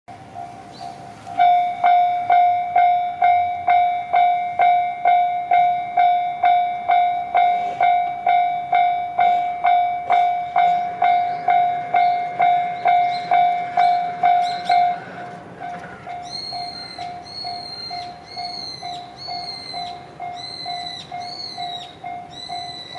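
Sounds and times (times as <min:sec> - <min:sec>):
level crossing warning bell: 0:00.1 - 0:22.9.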